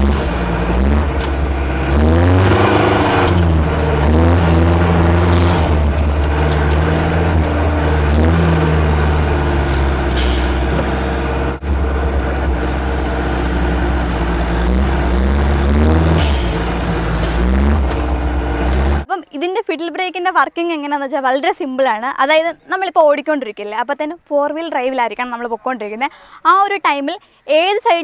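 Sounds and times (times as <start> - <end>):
diesel engine running: 0.0 - 19.1.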